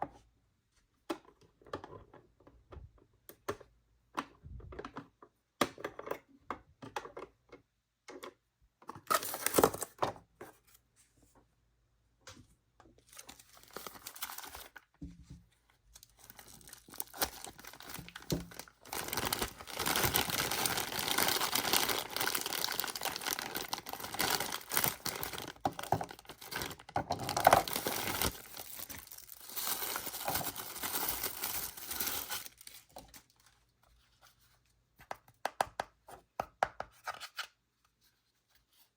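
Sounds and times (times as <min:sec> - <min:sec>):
plastic and paper crinkling: 0:13.0 - 0:34.0.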